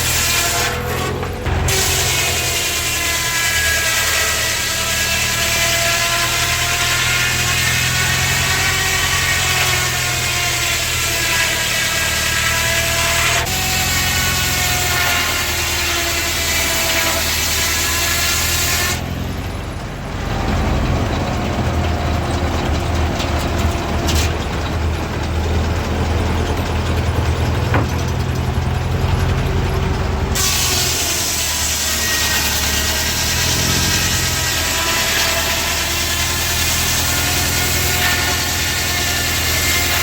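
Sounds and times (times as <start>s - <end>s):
old machinery engine humming: 0.0s - 4.2s, 18.3s - 40.0s.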